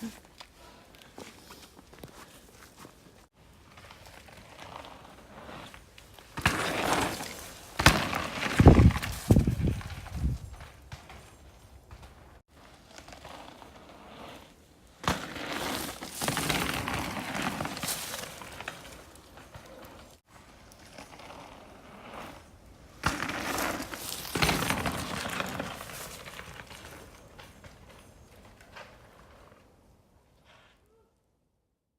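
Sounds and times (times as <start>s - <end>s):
bike tyres on dirt trail: 0.0s - 30.9s
bike frame and drivetrain rattling: 3.6s - 14.4s, 15.1s - 29.6s.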